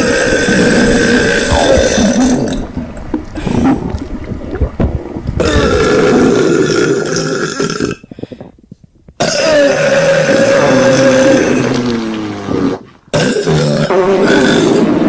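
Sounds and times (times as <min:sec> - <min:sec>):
person burping: 0:00.0 - 0:08.1, 0:13.1 - 0:14.6.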